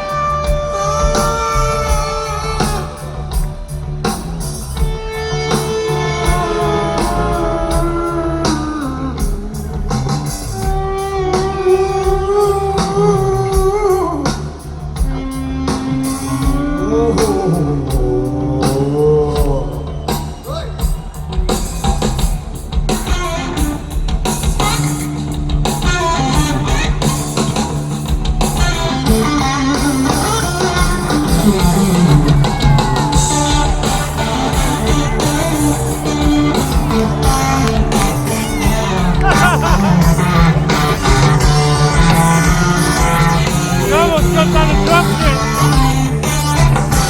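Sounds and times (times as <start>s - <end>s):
heavy metal band playing live: 0.0s - 47.0s
person singing: 39.1s - 40.4s, 43.7s - 45.7s.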